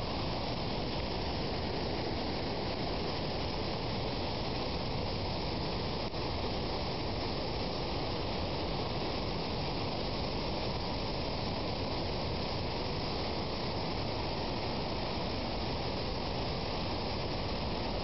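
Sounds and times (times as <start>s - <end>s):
floodwater rushing in a creek: 0.0s - 18.0s.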